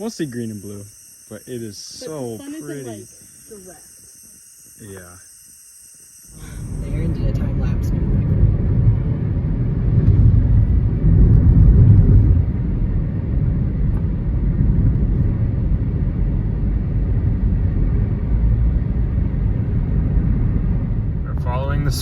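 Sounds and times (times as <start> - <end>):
car road and engine noise: 6.4 - 22.0.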